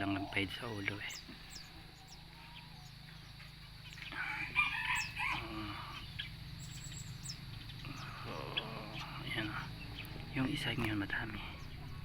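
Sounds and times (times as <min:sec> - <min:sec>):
small birds chirping: 0:00.0 - 0:12.0
rooster crowing: 0:04.1 - 0:06.0.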